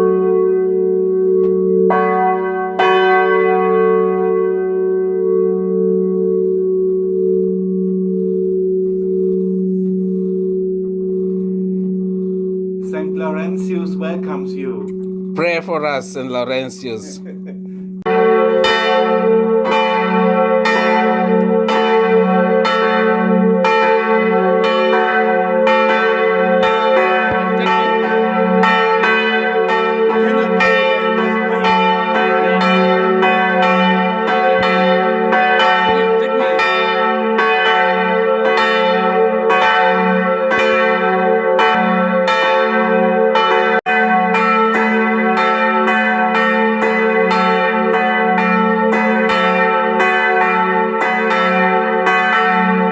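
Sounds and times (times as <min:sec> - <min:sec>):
low bell hum: 0:00.0 - 0:44.0
church bells pealing: 0:00.0 - 0:52.9.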